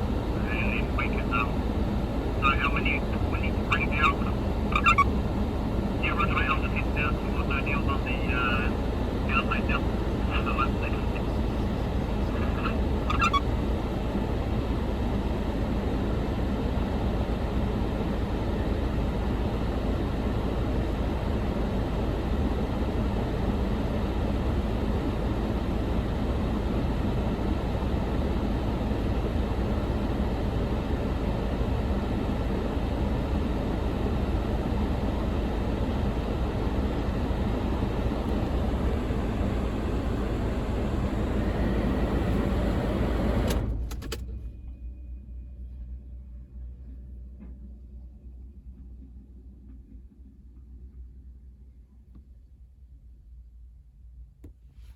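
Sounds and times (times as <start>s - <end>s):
diesel engine rumbling: 0.0s - 47.0s.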